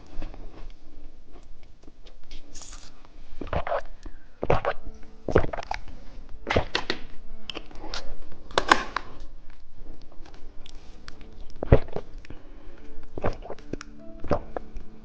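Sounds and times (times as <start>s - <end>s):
candy eating: 2.2s - 8.1s, 9.1s - 14.8s
candy wrapper crackling: 2.5s - 3.6s.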